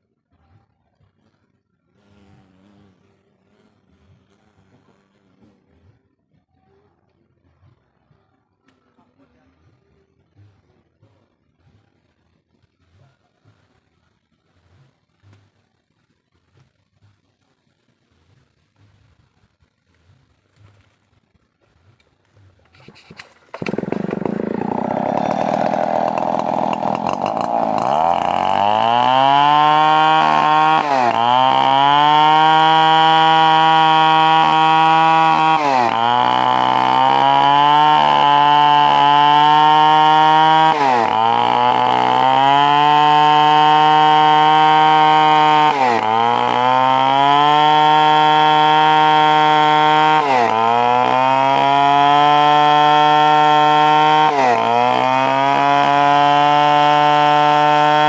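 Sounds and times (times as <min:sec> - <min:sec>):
chainsaw cutting timber: 0:01.2 - 0:05.7, 0:22.7 - 0:58.0.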